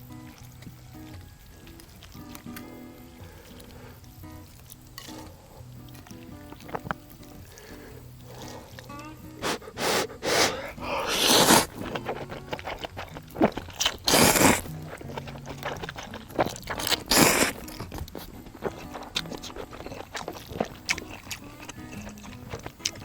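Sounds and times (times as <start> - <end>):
wet crunchy chewing: 0.0 - 23.0
slurping noodles: 6.0 - 23.0.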